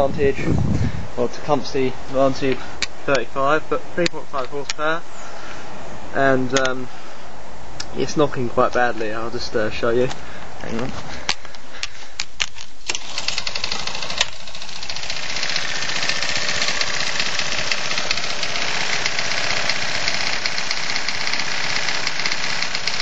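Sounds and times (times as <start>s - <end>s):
lawn mower engine knocking: 12.9s - 23.0s.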